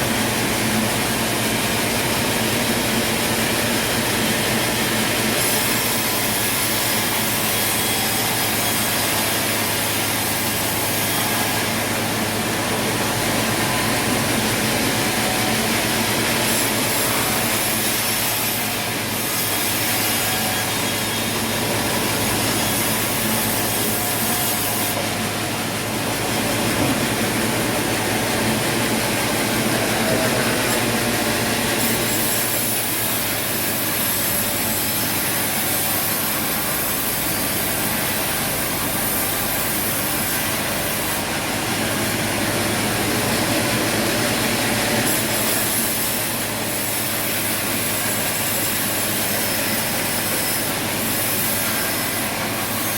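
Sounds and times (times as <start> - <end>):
sawmill saw cutting wood: 0.0 - 52.9.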